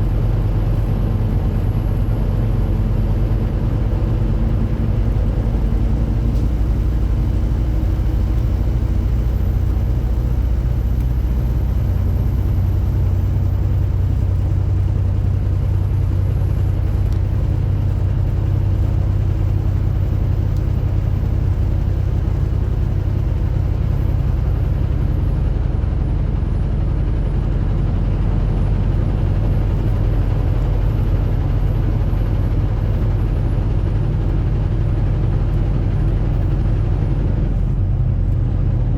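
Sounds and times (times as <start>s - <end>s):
heavy truck engine running: 0.0s - 38.9s
road noise: 0.0s - 38.9s.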